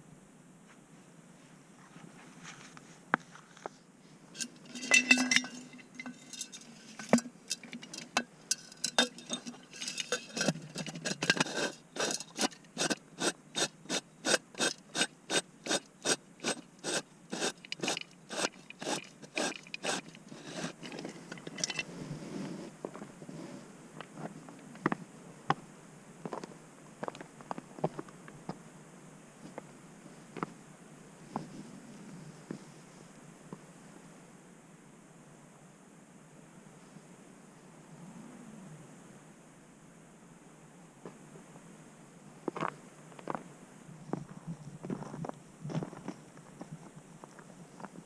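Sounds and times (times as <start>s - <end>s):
footsteps on frozen trail: 44.1s - 48.0s.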